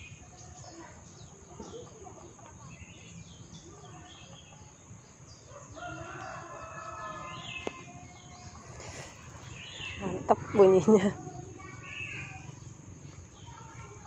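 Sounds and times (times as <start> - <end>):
small birds chirping: 0.0 - 14.0
rooster crowing: 5.7 - 7.6.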